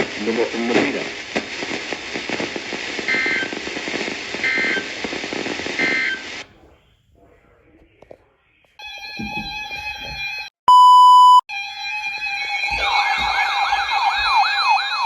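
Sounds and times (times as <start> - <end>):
buzzy data bursts: 0.0 - 6.4
faint hiss with clicks: 0.0 - 6.6
crackling radio static: 0.0 - 8.2.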